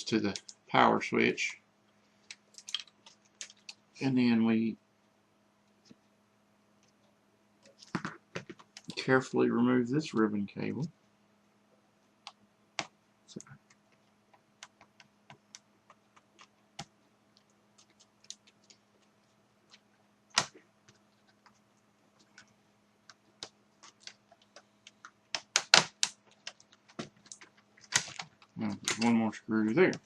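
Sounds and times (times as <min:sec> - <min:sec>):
faint steady hum: 0:00.0 - 0:30.0
plastic laptop parts clicking: 0:02.2 - 0:03.8, 0:22.2 - 0:29.2.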